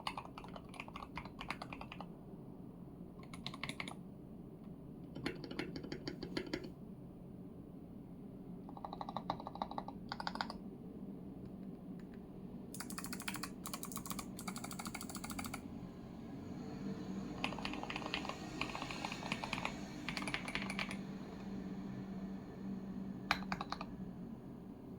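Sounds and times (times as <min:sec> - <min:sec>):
mechanical keyboard typing: 0:00.0 - 0:02.1, 0:03.2 - 0:04.0, 0:05.1 - 0:06.7, 0:08.7 - 0:10.6, 0:12.8 - 0:15.6, 0:17.4 - 0:21.0, 0:23.3 - 0:23.9.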